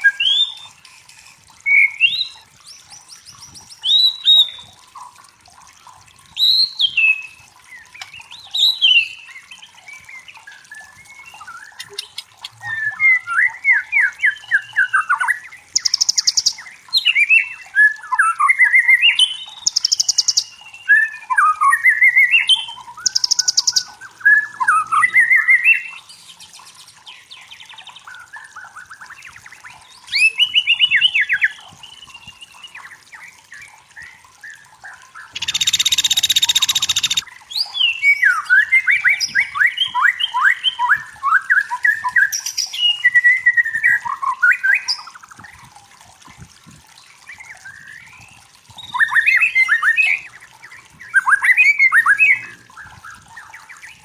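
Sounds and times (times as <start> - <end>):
bird singing whistled trills: 6.4 - 26.0, 35.2 - 45.1.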